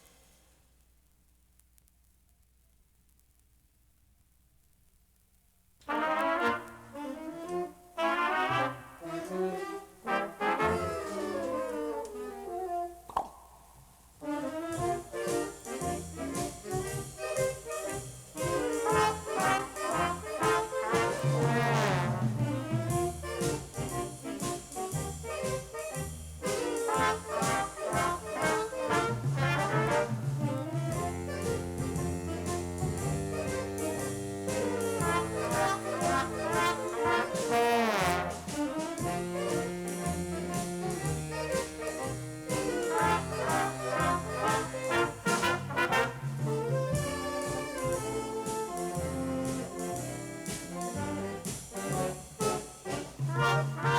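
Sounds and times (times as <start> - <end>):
big band jazz playing: 5.8 - 13.0, 14.2 - 53.9
horns gliding in pitch: 5.9 - 12.8, 14.2 - 53.9.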